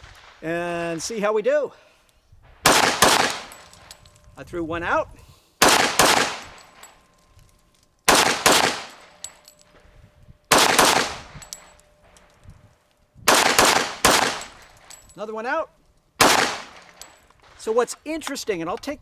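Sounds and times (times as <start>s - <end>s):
pistol shots: 2.6s - 4.0s, 5.6s - 7.0s, 8.1s - 9.5s, 10.5s - 11.8s, 13.3s - 14.8s, 16.2s - 17.6s.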